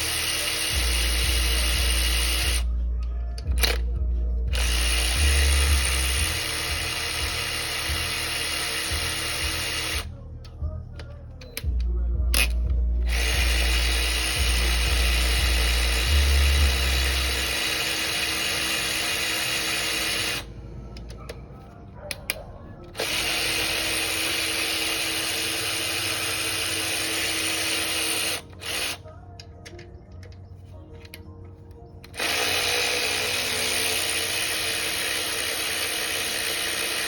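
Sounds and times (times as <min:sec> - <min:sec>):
handheld power tool running: 0:00.0 - 0:02.7, 0:03.4 - 0:03.9, 0:04.5 - 0:10.1, 0:12.4 - 0:20.5, 0:22.9 - 0:29.0, 0:32.0 - 0:37.0.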